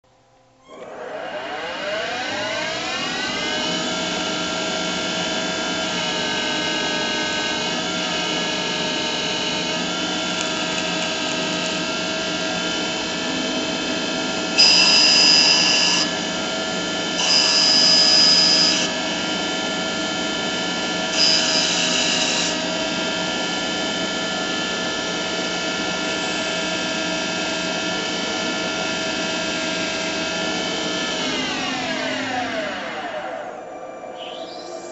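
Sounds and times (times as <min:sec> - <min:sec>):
cutting metal with squeal: 0:00.6 - 0:19.3, 0:21.1 - 0:22.7, 0:34.1 - 0:34.9
spindle motor whine: 0:00.6 - 0:34.9.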